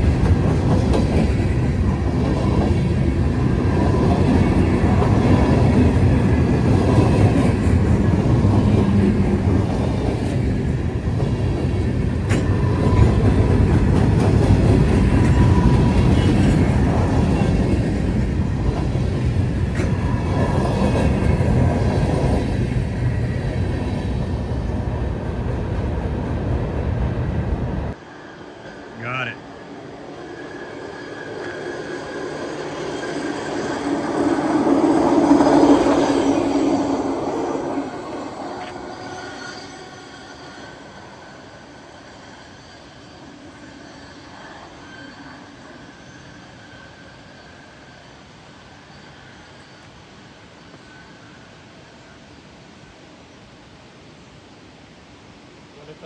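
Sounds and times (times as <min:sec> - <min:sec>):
freight train wheels rumbling: 0:00.0 - 0:47.3.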